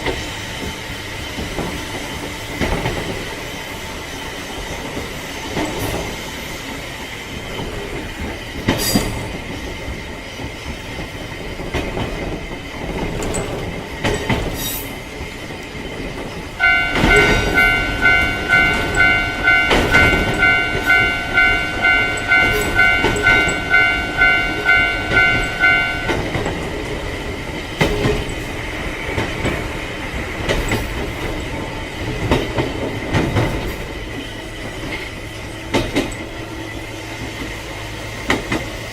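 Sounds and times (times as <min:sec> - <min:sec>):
train rumble: 0:00.0 - 0:38.9
train wheels clicking over rail joints: 0:00.0 - 0:38.9
pulsing ringing tone: 0:16.6 - 0:26.6.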